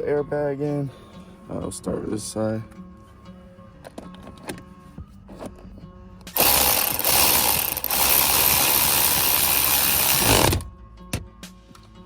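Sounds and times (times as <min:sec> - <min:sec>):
ratchet wrench clicking: 0:06.3 - 0:10.7.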